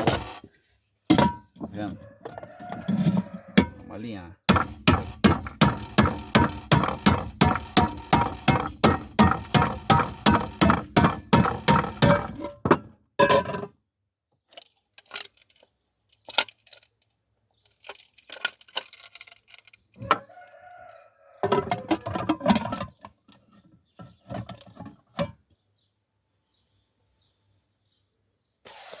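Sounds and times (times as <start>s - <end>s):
metal pot and lid clinking: 1.1s - 1.6s, 3.6s - 3.8s, 4.5s - 13.7s, 21.4s - 23.0s.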